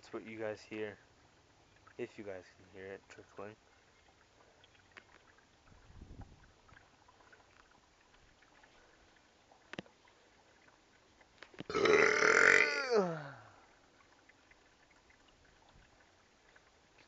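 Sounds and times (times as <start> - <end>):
boy burping: 11.7 - 13.5.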